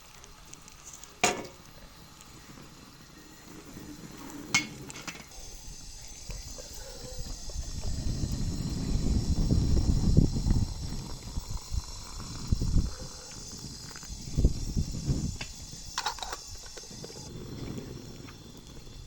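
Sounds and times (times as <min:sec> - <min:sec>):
low outdoor rumble in gusts: 0:07.5 - 0:19.0.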